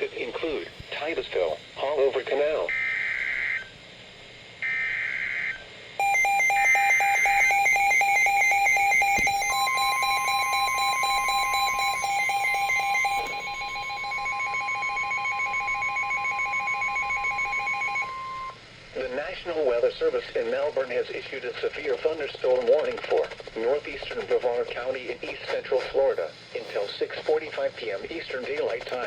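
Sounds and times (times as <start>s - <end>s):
fast beeping alarm: 4.6s - 18.6s
data burst tones: 4.8s - 18.6s
steady warning alert tone: 6.0s - 18.6s.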